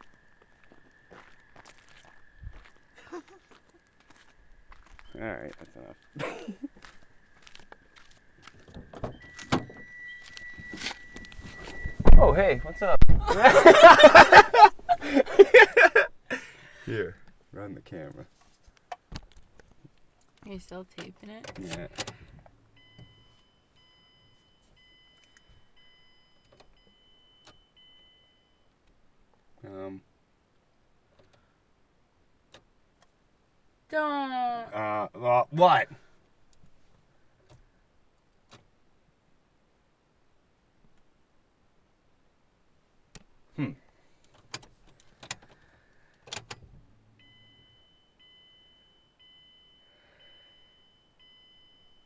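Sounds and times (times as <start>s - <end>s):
car warning chime: 9.0s - 14.6s, 22.7s - 28.8s, 47.1s - 52.0s.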